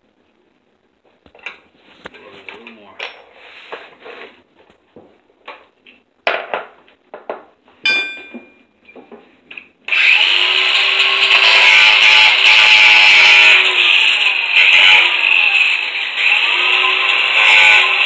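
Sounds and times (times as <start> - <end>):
metallic clink: 7.9 - 8.7
power tool whining: 9.9 - 18.0.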